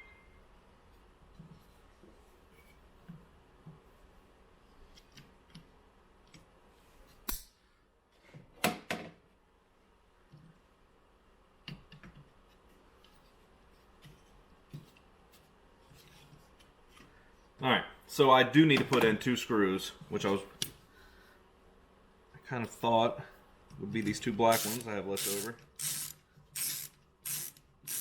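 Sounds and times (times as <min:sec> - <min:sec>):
small parts clicking and knocking: 0:24.5 - 0:28.0.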